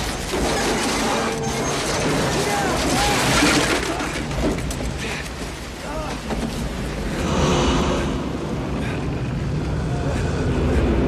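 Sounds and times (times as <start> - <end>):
tornado roaring wind: 0.0 - 11.0
deep low rumble: 6.8 - 10.2.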